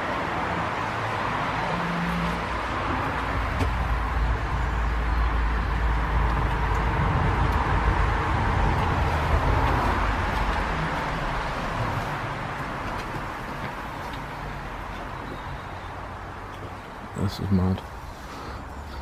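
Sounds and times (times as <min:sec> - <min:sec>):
vehicle rumble and tyre noise: 0:00.0 - 0:19.0.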